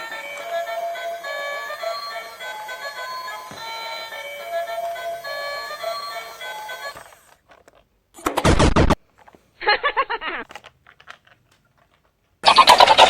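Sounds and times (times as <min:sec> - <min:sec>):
background music with held notes: 0:00.0 - 0:07.2.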